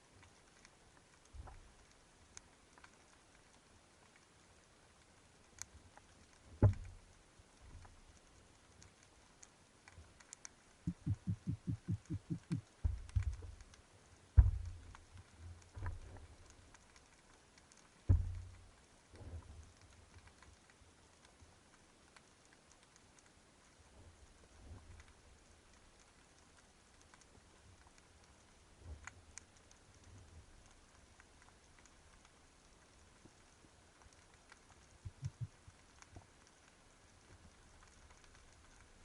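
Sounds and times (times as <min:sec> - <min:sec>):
faint crackling ticks: 0:00.0 - 0:39.0
underwater knocks: 0:06.6 - 0:06.9, 0:10.9 - 0:13.5, 0:14.4 - 0:14.8, 0:18.1 - 0:18.5.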